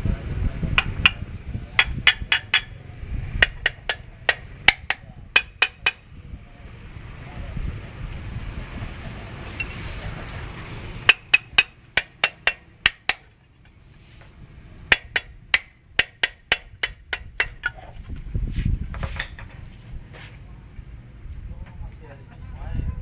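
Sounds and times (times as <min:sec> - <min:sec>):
hammer striking metal: 0:00.8 - 0:02.8, 0:03.4 - 0:06.0, 0:09.6 - 0:09.8, 0:11.0 - 0:13.3, 0:14.9 - 0:17.9.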